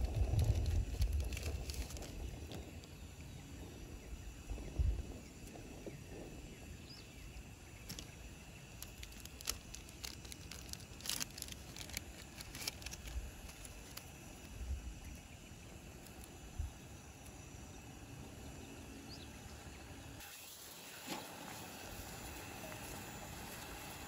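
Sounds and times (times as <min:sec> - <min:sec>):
sharp clicks and crackles: 0:00.0 - 0:03.0, 0:07.8 - 0:14.6
faint high hum: 0:00.0 - 0:24.0.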